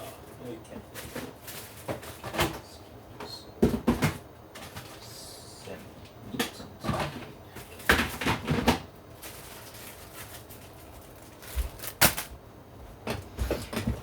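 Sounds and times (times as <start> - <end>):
objects knocking and rattling: 3.6 - 5.0, 6.8 - 12.4.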